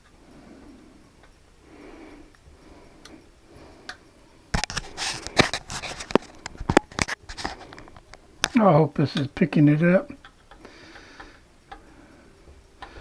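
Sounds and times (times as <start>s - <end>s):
hand tools clicking and clattering: 4.6s - 11.9s.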